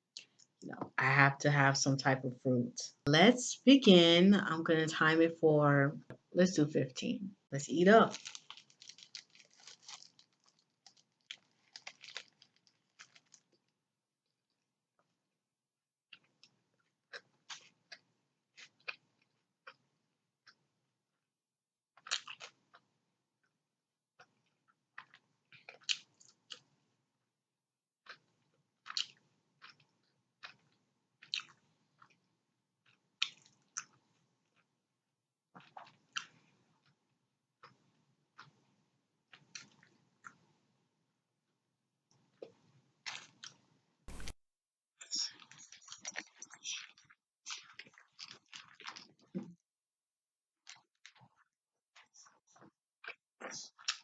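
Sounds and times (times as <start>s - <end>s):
chewing crunchy food: 8.1s - 13.7s, 16.1s - 20.7s, 22.0s - 23.0s, 24.2s - 26.8s, 28.0s - 34.8s, 35.5s - 38.7s, 39.3s - 40.5s, 42.2s - 44.4s, 45.3s - 49.6s, 50.6s - 54.0s.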